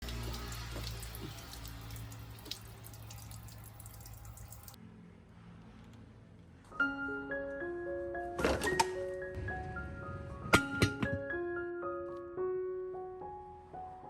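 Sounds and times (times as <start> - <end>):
water running from a tap: 0.0 - 4.8
drip clicks: 0.1 - 4.8.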